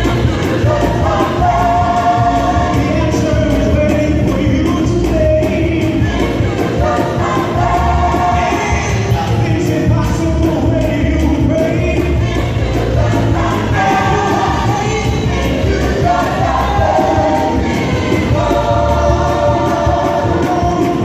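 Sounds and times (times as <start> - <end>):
choir singing gospel: 0.0 - 21.0
instrumental accompaniment: 0.0 - 21.0.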